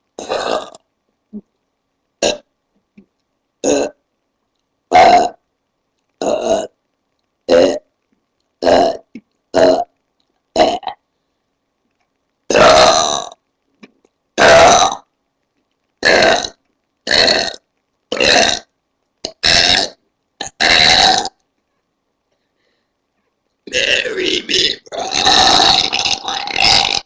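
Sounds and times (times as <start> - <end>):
woman belching: 0.2 - 0.8, 2.2 - 2.4, 3.6 - 4.0, 4.9 - 5.4, 6.2 - 6.7, 7.5 - 7.8, 8.6 - 9.9, 10.6 - 11.0, 12.5 - 13.4, 14.4 - 15.0, 16.0 - 18.6, 19.3 - 21.3, 23.7 - 27.0.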